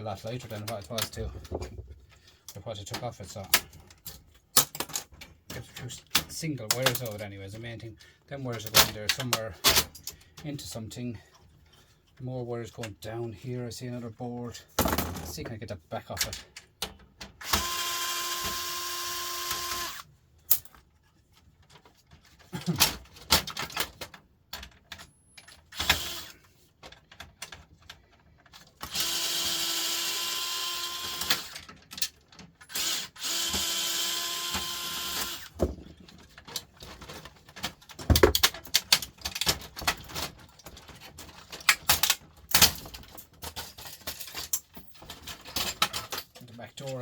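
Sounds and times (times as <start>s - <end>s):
clicks and knocks of parts handled: 0.1s - 10.6s, 14.7s - 17.7s, 19.8s - 29.2s, 31.1s - 33.8s, 34.6s - 47.0s
power drill-driver running: 17.4s - 20.1s, 25.8s - 26.3s, 28.9s - 31.6s, 32.7s - 35.6s.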